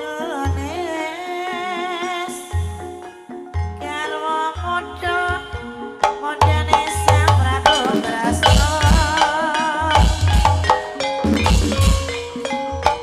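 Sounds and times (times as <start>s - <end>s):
struck metallophone notes: 0.0s - 13.0s
wavering held melody: 0.0s - 13.0s
hand drum pattern: 5.1s - 13.0s.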